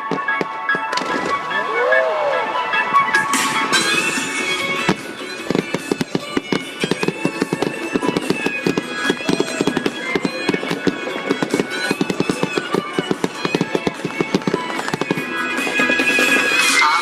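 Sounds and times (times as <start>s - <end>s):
music playing: 0.0s - 17.0s
fireworks crackling and popping: 3.3s - 17.0s.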